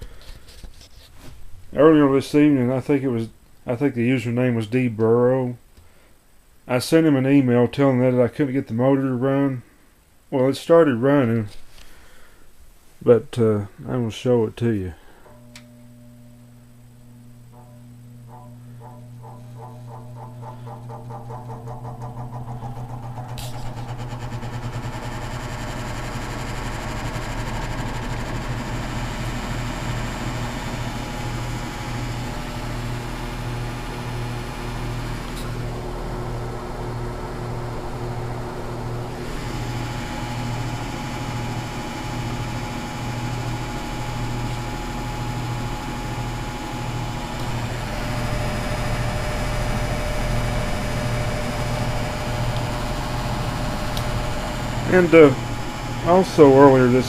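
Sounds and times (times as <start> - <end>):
fan motor humming: 14.7 - 57.0.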